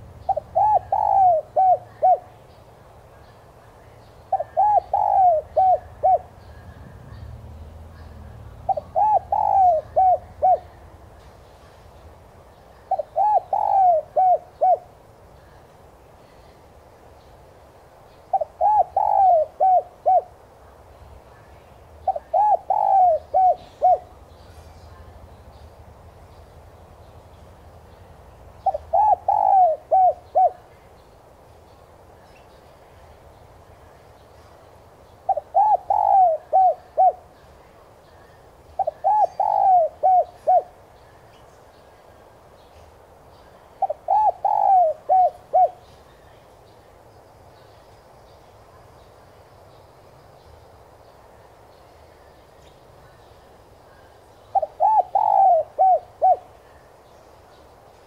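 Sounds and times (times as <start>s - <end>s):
dove cooing: 0.0s - 2.4s, 4.3s - 6.8s, 8.7s - 10.9s, 12.8s - 15.0s, 18.3s - 20.5s, 22.0s - 24.2s, 28.6s - 30.7s, 35.2s - 37.4s, 38.8s - 40.9s, 43.8s - 45.9s, 54.5s - 56.7s.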